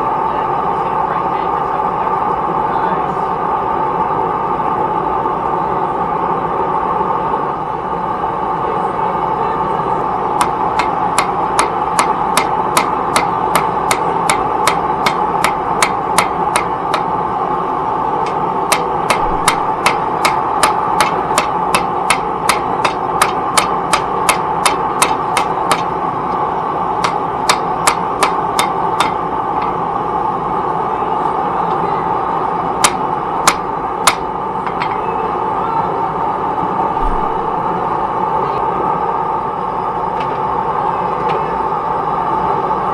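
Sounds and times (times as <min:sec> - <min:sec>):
hammer striking metal on anvil: 0:10.4 - 0:17.1, 0:18.2 - 0:25.9, 0:27.0 - 0:29.7, 0:32.8 - 0:35.0.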